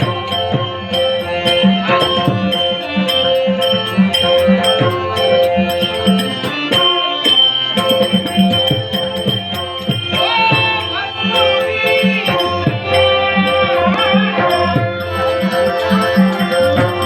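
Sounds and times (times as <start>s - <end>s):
drum beats: 0.0s - 17.0s
harmonium held melody: 0.0s - 17.0s
small cymbals striking: 0.0s - 17.0s
wavering gliding melodic line: 11.4s - 17.0s.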